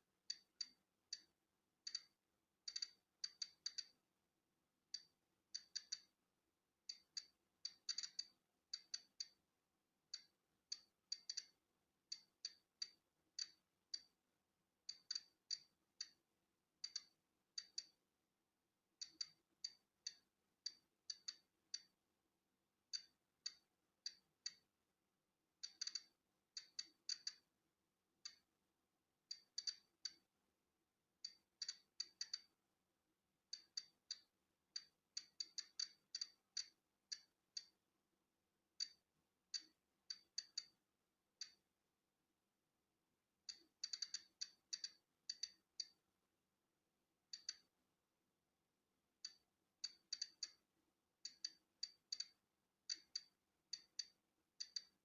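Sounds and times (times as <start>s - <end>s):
geiger counter clicking: 1.9s - 4.0s, 5.0s - 6.1s, 6.9s - 9.4s, 10.1s - 14.2s, 14.9s - 16.2s, 16.8s - 18.0s, 19.0s - 21.9s, 22.9s - 24.6s, 25.6s - 27.5s, 28.2s - 28.5s, 29.3s - 30.3s, 31.2s - 32.6s, 33.5s - 37.8s, 38.8s - 40.8s, 41.4s - 41.6s, 43.5s - 46.0s, 47.3s - 47.7s, 49.2s - 50.6s, 51.2s - 55.0s.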